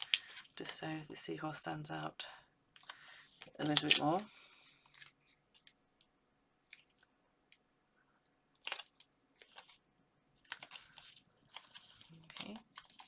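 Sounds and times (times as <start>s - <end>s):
crinkly paper rustles: 8.6s - 9.8s, 10.4s - 13.0s.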